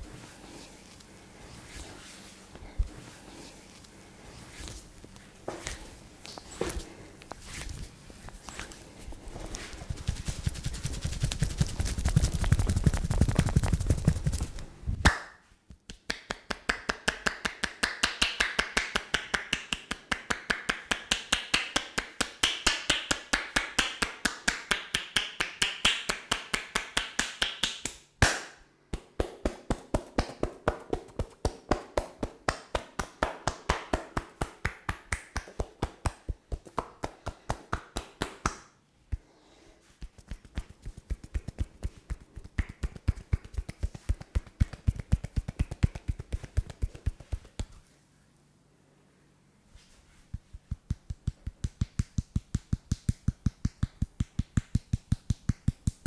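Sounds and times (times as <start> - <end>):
hands tapping on a body: 10.0 - 28.0, 28.9 - 39.2, 40.0 - 47.8, 50.3 - 56.0.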